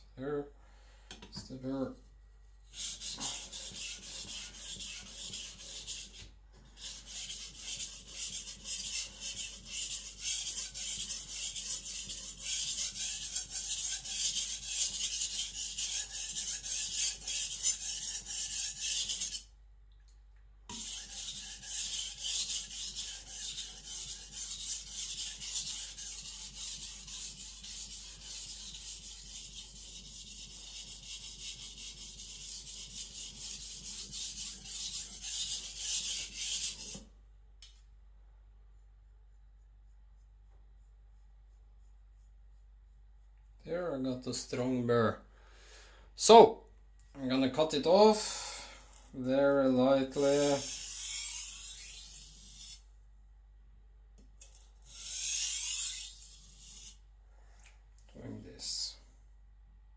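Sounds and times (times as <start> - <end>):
knife scraping on whetstone: 2.8 - 19.5, 20.7 - 37.0, 50.1 - 52.9, 54.4 - 57.0.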